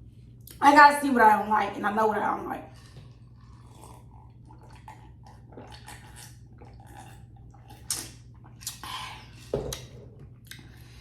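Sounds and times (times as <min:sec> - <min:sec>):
wet squishy chewing: 0:02.7 - 0:08.9.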